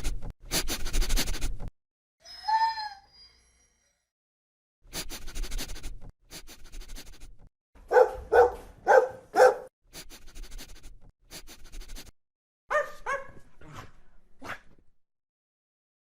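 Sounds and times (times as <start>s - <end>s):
dog barking: 7.8s - 9.7s, 12.7s - 13.8s.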